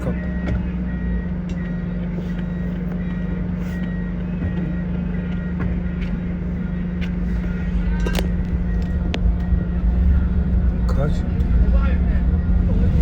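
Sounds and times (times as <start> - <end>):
vehicle engine drone: 0.0 - 13.0.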